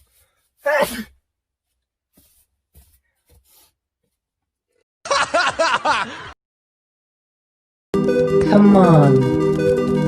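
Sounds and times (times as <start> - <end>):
soft rustles: 1.6 - 4.2
music: 8.0 - 10.0.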